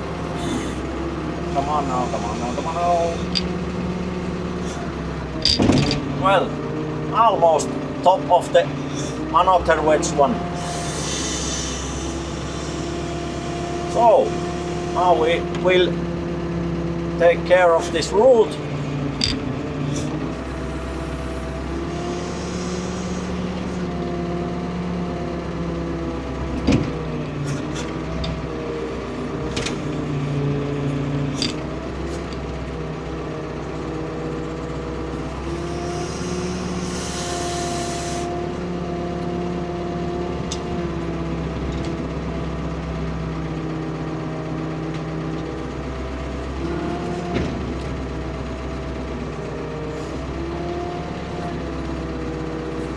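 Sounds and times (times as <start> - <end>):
hydraulic hissing: 0.0 - 6.5, 7.4 - 39.6
excavator diesel engine under load: 0.0 - 52.9.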